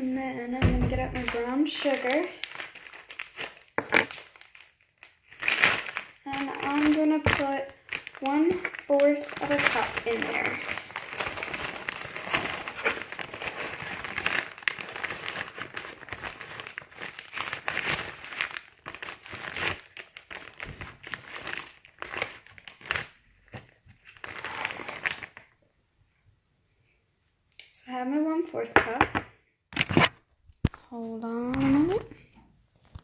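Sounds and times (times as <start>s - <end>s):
package crinkling and rustling: 1.0s - 25.6s.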